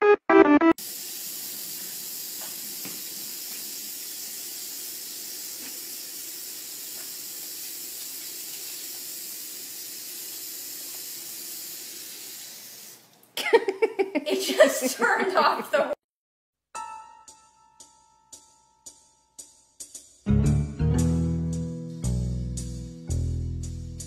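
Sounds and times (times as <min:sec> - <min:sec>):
steady hiss: 0:00.8 - 0:13.0.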